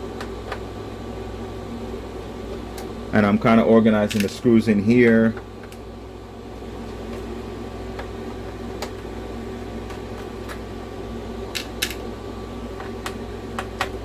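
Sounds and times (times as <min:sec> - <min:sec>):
small parts clicking and tapping: 0:04.0 - 0:04.4, 0:11.5 - 0:12.0.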